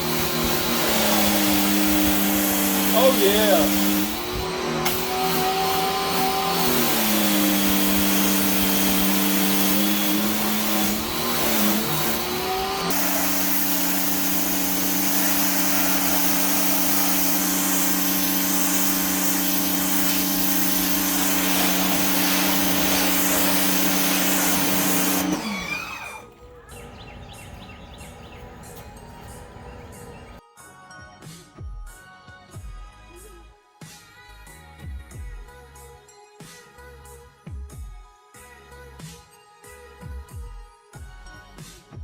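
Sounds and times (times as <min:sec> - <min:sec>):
pressure washer motor whine: 0:00.0 - 0:30.4
pressure washer spray hiss: 0:00.0 - 0:30.4.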